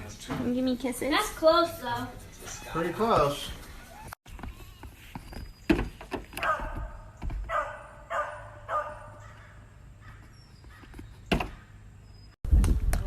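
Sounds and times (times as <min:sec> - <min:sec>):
dog calling: 0:06.3 - 0:10.8.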